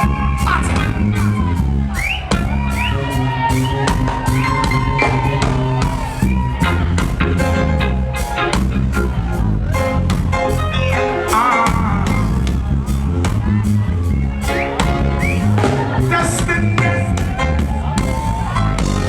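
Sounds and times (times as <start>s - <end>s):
bass guitar: 0.0s - 19.0s
drum kit: 0.0s - 19.0s
electric guitar: 2.9s - 12.5s.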